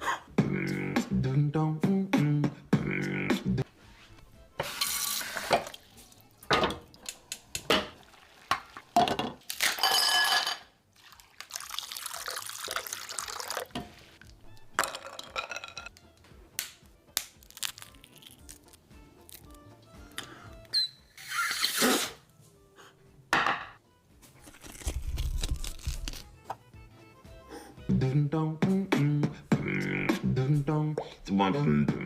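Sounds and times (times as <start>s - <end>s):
water running from tap: 4.6s - 5.8s, 11.0s - 13.8s
kitchen clicks and knocks: 6.5s - 10.6s.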